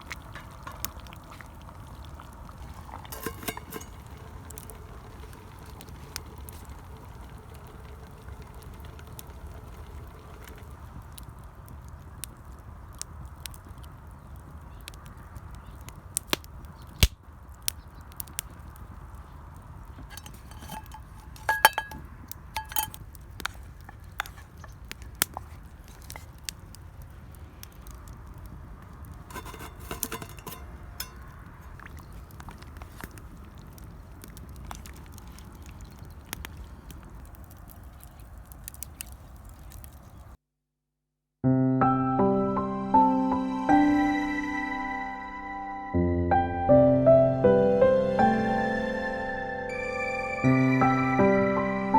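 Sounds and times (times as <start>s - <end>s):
metal spoon clinking on cookware: 3.1s - 4.1s, 20.1s - 22.0s, 22.6s - 23.0s, 29.3s - 31.3s.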